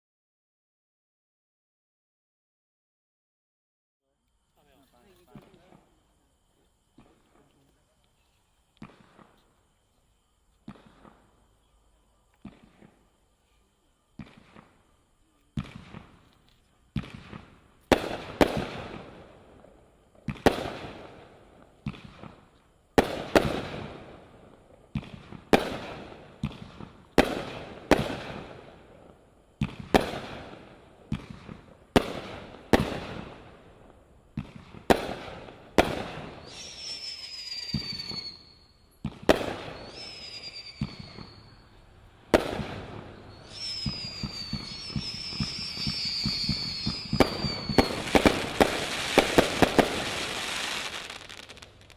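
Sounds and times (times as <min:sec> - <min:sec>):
falling firework whistles: 0:08.2 - 0:33.6, 0:34.4 - 0:51.9
firework bangs: 0:10.6 - 0:11.4, 0:15.5 - 0:16.3, 0:16.9 - 0:51.9.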